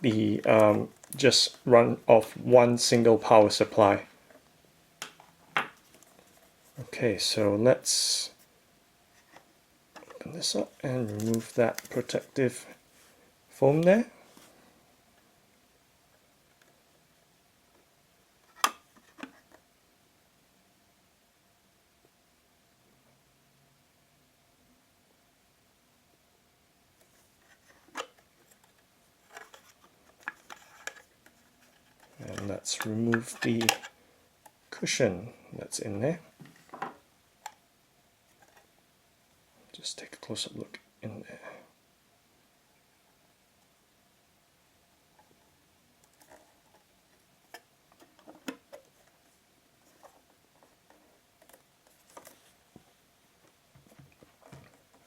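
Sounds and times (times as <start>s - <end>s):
soft clicks and rubs: 46.0s - 55.0s.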